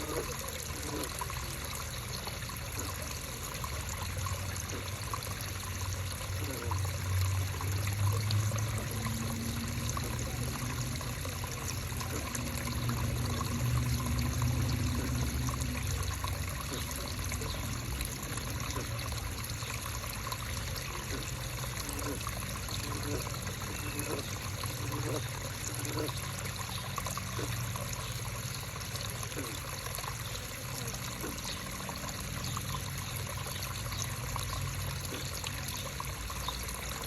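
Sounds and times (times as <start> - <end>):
creek water running and trickling: 0.0 - 37.0.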